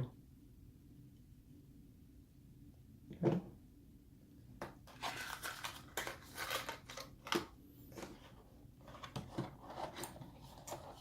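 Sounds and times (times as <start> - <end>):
packaging crinkling and rustling: 4.8 - 11.0.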